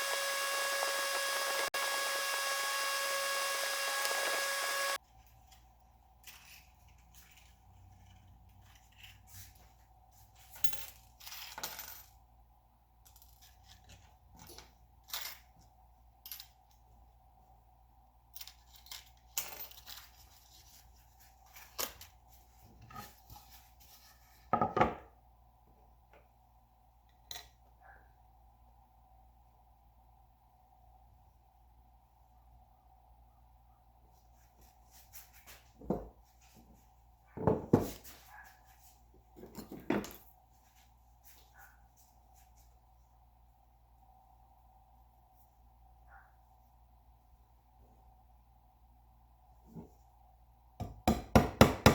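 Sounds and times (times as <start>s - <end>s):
power tool whining: 0.0s - 5.0s.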